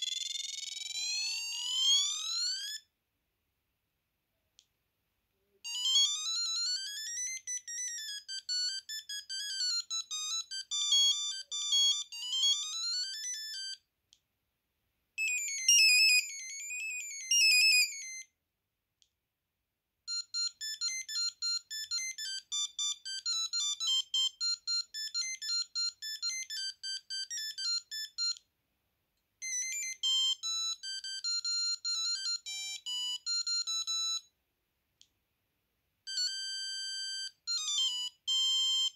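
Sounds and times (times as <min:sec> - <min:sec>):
mobile phone beeping ringtones: 0:00.0 - 0:02.8, 0:05.6 - 0:13.8, 0:15.2 - 0:18.3, 0:20.1 - 0:28.4, 0:29.4 - 0:34.3, 0:36.1 - 0:38.9.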